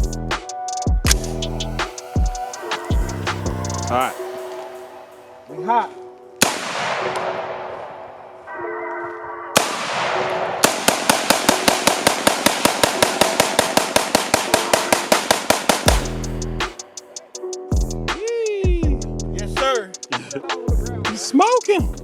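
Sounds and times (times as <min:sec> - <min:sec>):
background music: 0:00.0 - 0:22.0
rifle shots: 0:06.4 - 0:08.2, 0:09.6 - 0:16.0.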